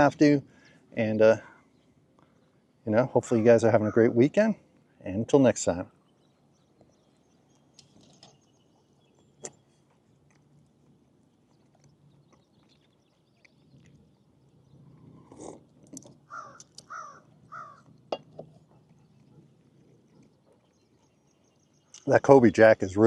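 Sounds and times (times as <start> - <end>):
bird cawing: 3.4 - 4.2, 16.2 - 17.9.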